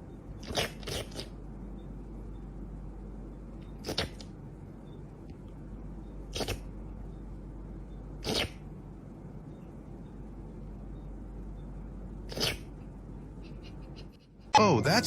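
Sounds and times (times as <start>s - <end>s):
cat sneezing: 6.3s - 6.6s, 8.2s - 8.6s, 12.3s - 12.7s.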